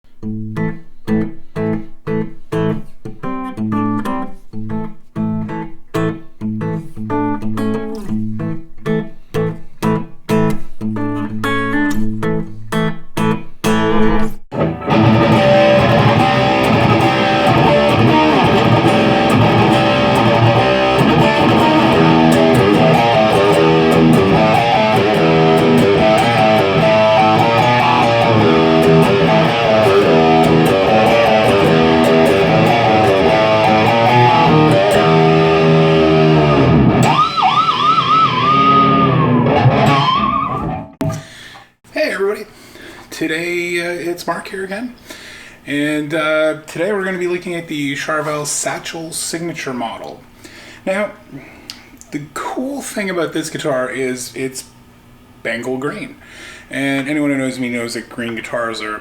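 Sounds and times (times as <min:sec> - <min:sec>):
electric guitar playing: 0:00.2 - 0:41.4.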